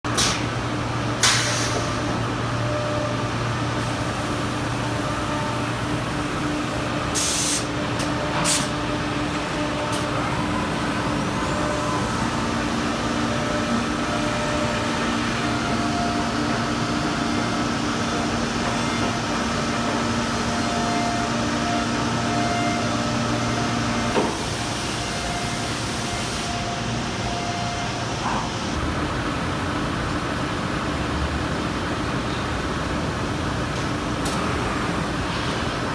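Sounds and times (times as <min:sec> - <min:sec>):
machine mechanical hum with tones: 0:00.1 - 0:35.9
compressed-air hiss: 0:07.2 - 0:07.7.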